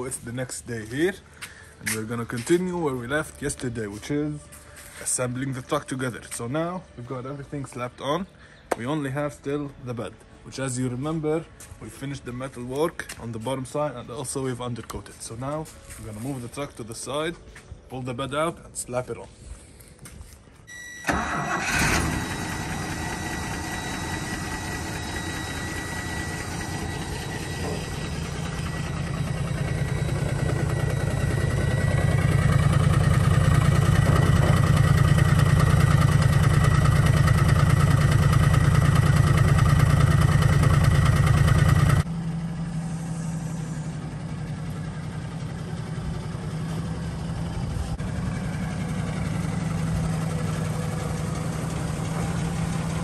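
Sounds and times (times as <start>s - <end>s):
engine starting and running: 20.7s - 53.0s.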